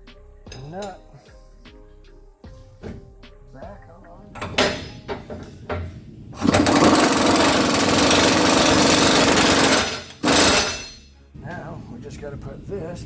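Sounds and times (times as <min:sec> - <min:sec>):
impact wrench hammering: 0:04.4 - 0:11.1.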